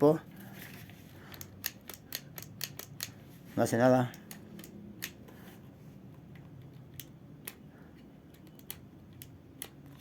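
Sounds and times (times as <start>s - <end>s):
sharp plastic clicks: 1.2s - 3.2s, 4.0s - 5.3s, 6.3s - 10.0s.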